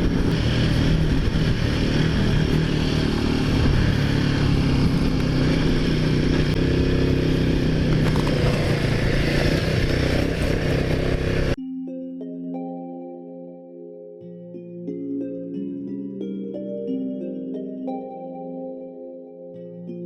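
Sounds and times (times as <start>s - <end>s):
wind noise: 0.0s - 6.6s
motorcycle engine running: 0.0s - 11.6s
soft sustained music: 11.6s - 20.0s.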